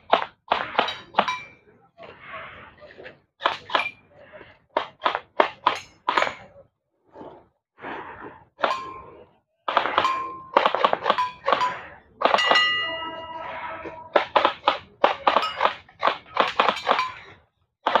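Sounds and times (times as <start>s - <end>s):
airsoft gun shots: 9.7s - 12.6s
metal target ringing: 9.9s - 10.6s, 11.2s - 14.4s.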